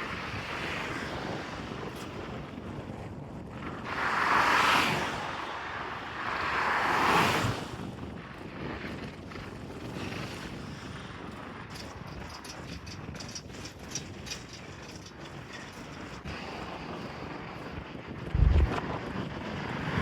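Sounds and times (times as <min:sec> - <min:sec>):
wind: 0:00.0 - 0:20.0
background traffic: 0:18.2 - 0:20.0
vehicles passing close by: 0:18.3 - 0:18.9.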